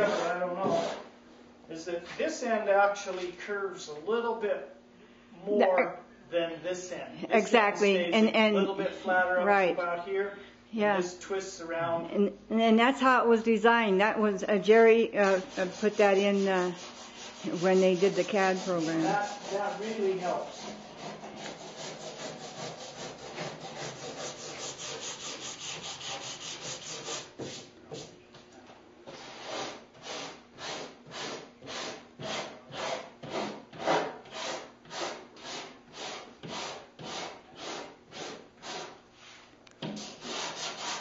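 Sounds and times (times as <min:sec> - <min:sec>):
sanding board strokes on car hood: 0:15.2 - 0:28.1, 0:40.0 - 0:41.0.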